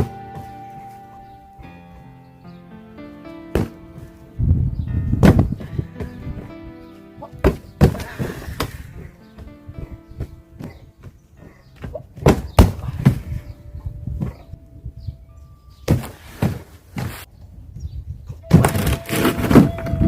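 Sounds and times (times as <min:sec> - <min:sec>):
faint background music: 0:00.0 - 0:20.0
heavy thumps of strikes: 0:03.5 - 0:04.0, 0:07.3 - 0:08.8.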